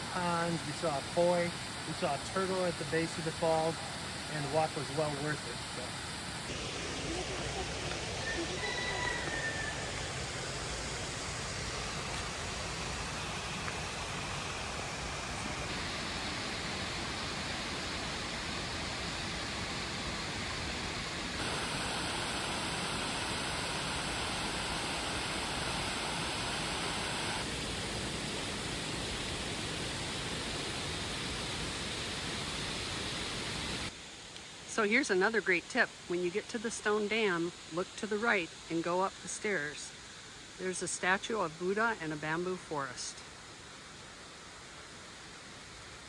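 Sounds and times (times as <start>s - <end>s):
waterfall rushing: 0.0s - 9.1s, 9.7s - 33.9s.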